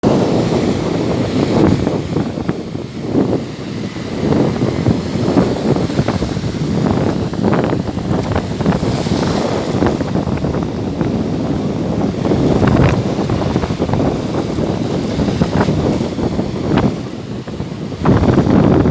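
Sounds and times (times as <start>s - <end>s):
surf washing onto beach: 0.0s - 18.9s
wind buffeting microphone: 0.0s - 18.9s.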